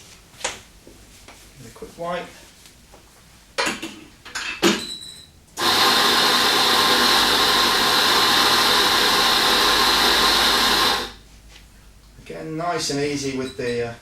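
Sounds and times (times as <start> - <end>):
coffee grinder motor: 5.6 - 11.2.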